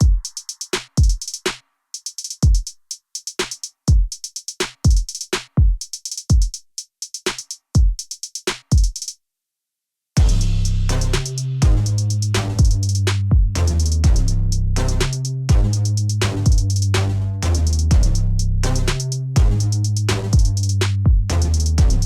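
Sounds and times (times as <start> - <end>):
drum machine kicks: 0.0 - 1.5, 2.4 - 2.7, 3.9 - 6.6, 7.8 - 9.0, 10.2 - 10.5, 11.6 - 11.9, 12.6 - 14.3, 15.5 - 16.8, 19.4 - 19.6, 20.2 - 22.0
hi-hat ticks: 0.0 - 9.1, 10.6 - 17.0, 17.6 - 22.0.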